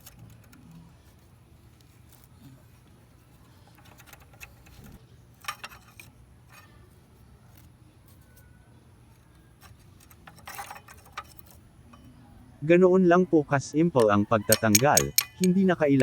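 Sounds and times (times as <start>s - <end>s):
metallic clicks and scrapes: 0.0s - 6.8s, 9.6s - 12.1s, 14.0s - 15.8s.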